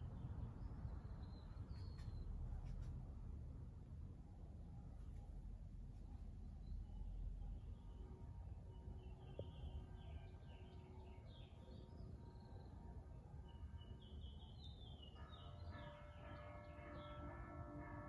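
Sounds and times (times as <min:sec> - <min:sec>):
church bells ringing: 0:15.2 - 0:18.0.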